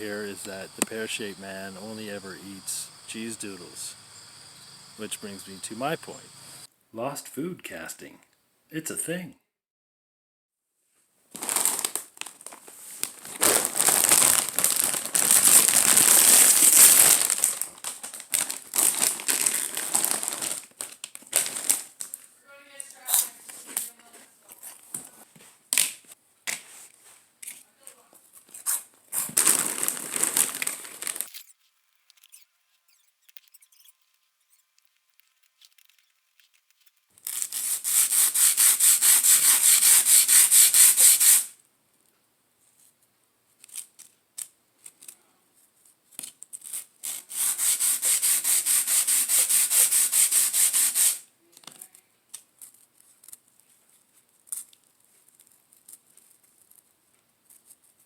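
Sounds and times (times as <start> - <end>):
rapid rasping or scraping: 28.6 - 41.5, 47.0 - 51.2.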